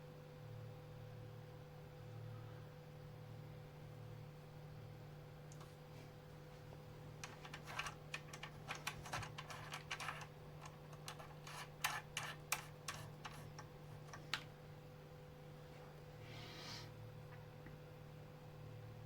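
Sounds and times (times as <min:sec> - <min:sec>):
low electrical hum: 0:00.0 - 0:19.0
clicks and scrapes on circuit board: 0:07.2 - 0:14.5.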